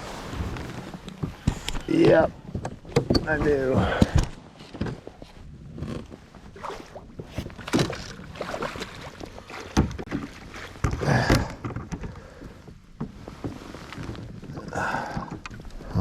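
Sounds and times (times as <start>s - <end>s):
water splashes: 6.5s - 11.6s
knocks in a kayak: 9.7s - 12.2s
rustling gear: 12.1s - 16.0s.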